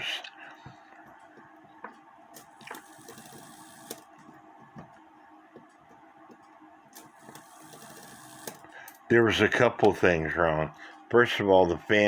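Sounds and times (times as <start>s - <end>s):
clock movement clicking: 2.4s - 4.0s, 7.0s - 8.6s.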